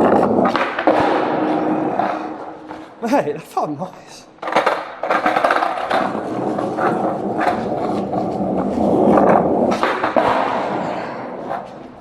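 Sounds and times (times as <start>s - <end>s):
skateboard clacks: 0.0s - 3.0s, 4.4s - 12.0s
skateboard wheels rolling on concrete: 0.0s - 12.0s.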